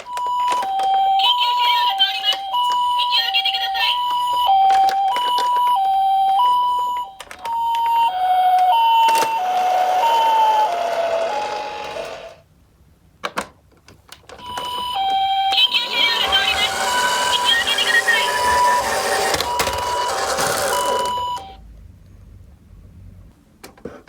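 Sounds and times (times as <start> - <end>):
toy siren two-tone high-low: 0.1 - 12.2, 14.4 - 21.6
toy wheels rolling: 8.6 - 12.4, 15.0 - 21.6.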